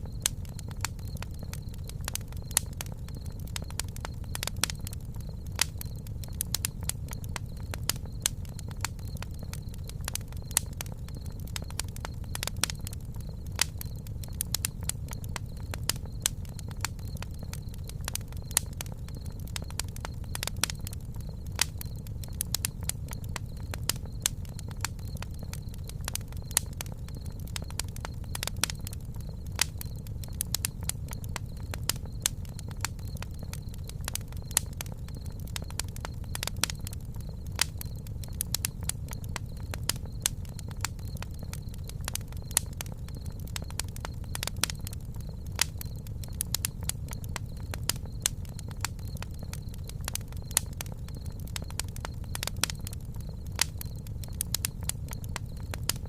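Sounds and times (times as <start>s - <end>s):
campfire crackling and popping: 0.0s - 56.0s.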